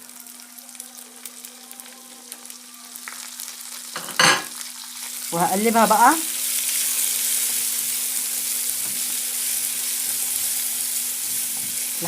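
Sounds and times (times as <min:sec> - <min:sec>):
food sizzling in a frying pan: 0:00.0 - 0:12.0
spoon stirring in a pan: 0:06.5 - 0:12.0.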